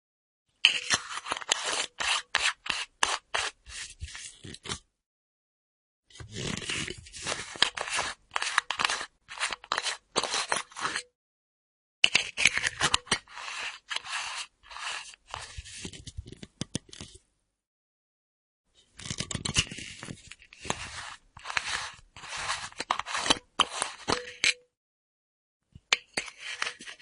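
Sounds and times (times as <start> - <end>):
metal screw cap scraping and clicking: 12.1 - 14.1, 19.0 - 24.7, 25.9 - 27.0.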